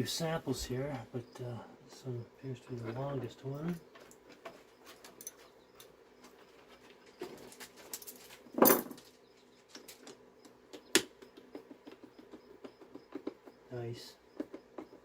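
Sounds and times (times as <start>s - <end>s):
small clicks and rattles: 3.9s - 13.7s.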